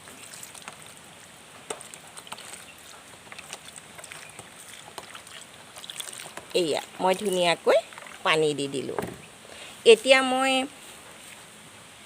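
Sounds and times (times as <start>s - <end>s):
water trickling onto soil: 0.0s - 9.0s.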